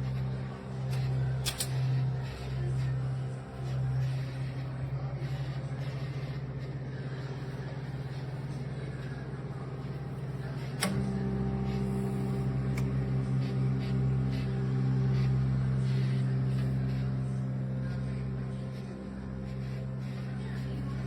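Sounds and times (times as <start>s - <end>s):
microwave humming: 0.0s - 21.0s
microwave click: 10.7s - 11.3s.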